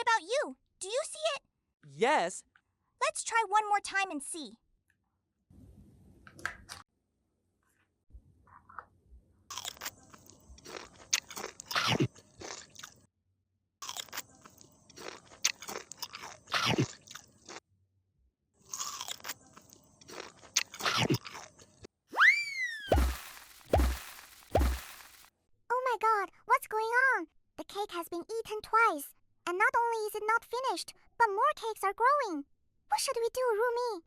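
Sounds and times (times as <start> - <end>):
crunchy biting and chewing: 9.5 - 13.0, 13.8 - 17.6, 18.6 - 21.9, 22.9 - 25.3.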